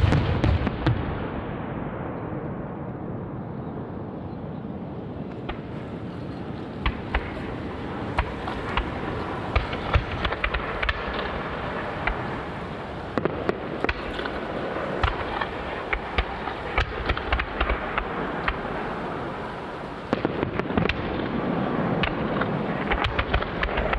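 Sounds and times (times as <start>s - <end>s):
steady rushing background noise: 2.9s - 23.9s
fireworks cracking and popping: 5.3s - 23.9s.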